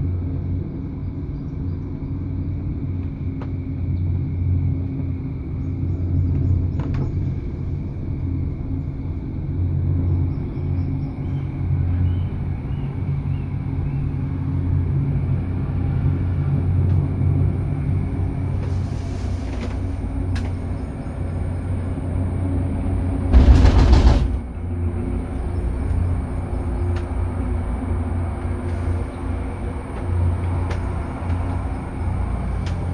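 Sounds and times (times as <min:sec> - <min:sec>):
cable car low rumble and hum: 0:00.0 - 0:32.9
rattling clatter: 0:23.3 - 0:24.5.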